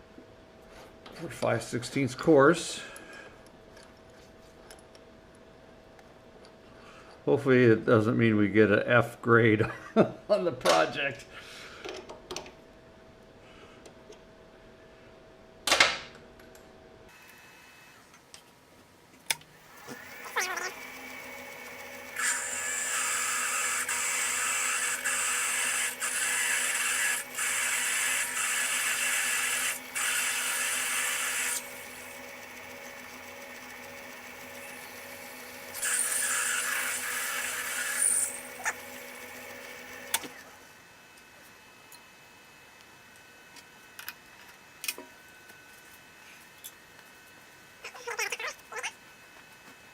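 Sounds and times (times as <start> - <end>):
drill cutting metal: 19.6 - 40.4
lathe humming: 19.6 - 40.6.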